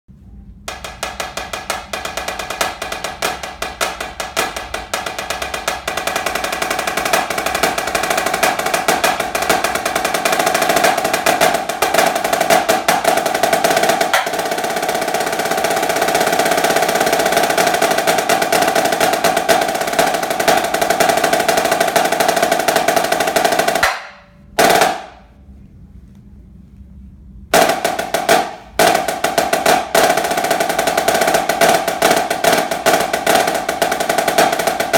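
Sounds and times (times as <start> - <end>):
snare drum roll: 0.7 - 25.3, 27.5 - 34.9.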